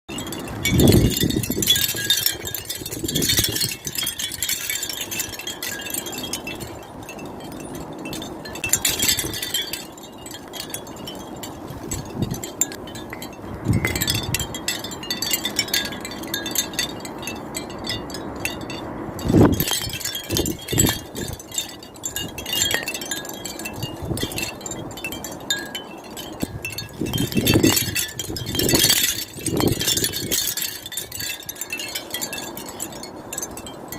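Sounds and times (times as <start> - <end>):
wind chimes tinkling: 0.1 - 33.9
low rumbles: 0.2 - 24.7.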